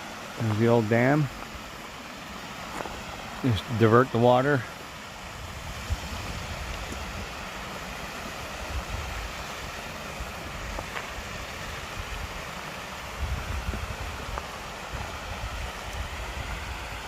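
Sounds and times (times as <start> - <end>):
creek water rushing over dam: 0.0 - 17.0
wind buffeting microphone: 5.3 - 7.6, 13.1 - 17.0.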